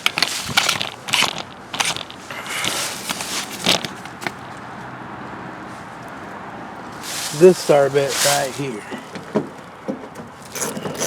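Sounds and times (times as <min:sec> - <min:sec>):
tools clicking and scraping: 0:00.0 - 0:04.4.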